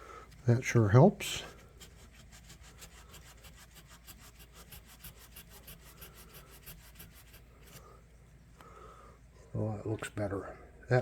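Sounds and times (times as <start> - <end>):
sandpaper scratching metal: 1.7 - 7.8.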